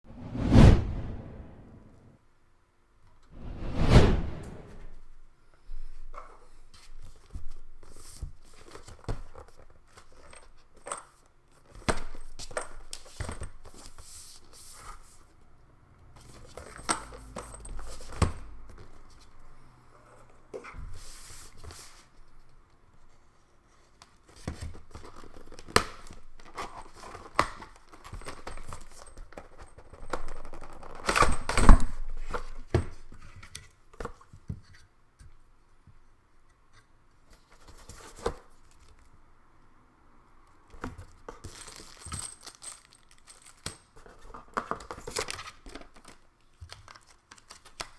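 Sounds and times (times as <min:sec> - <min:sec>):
cardboard box and plastic handled: 0:24.0 - 0:34.9, 0:37.2 - 0:39.1, 0:40.7 - 0:47.9.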